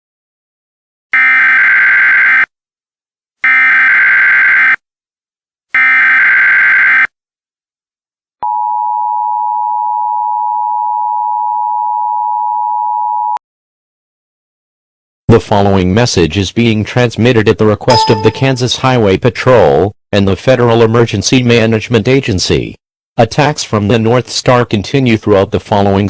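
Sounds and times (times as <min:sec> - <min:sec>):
steady attention tone: 0:17.9 - 0:18.8.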